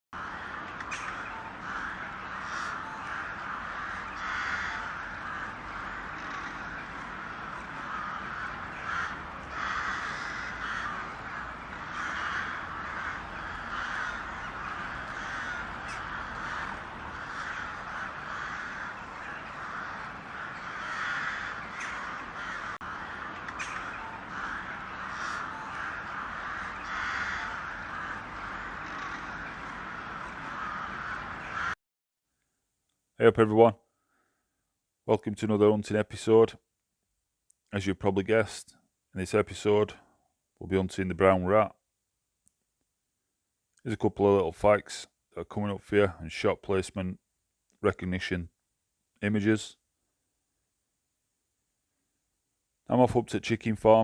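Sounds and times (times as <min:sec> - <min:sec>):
flock of crows cawing: 0:00.2 - 0:31.8.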